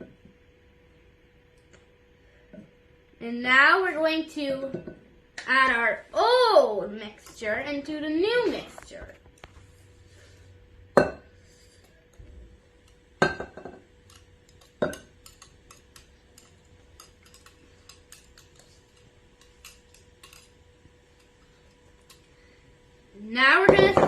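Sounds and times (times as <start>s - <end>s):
faint steady hum: 0.0s - 24.0s
utensil clinking on mixing bowl: 13.2s - 18.8s.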